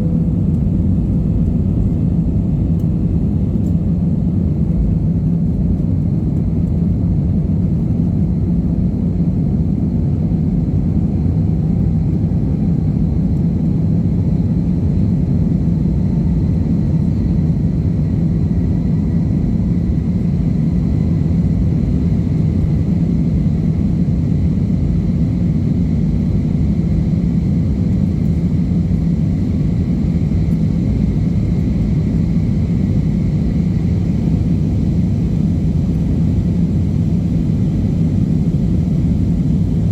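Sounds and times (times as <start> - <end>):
airliner cabin drone: 0.0 - 39.9.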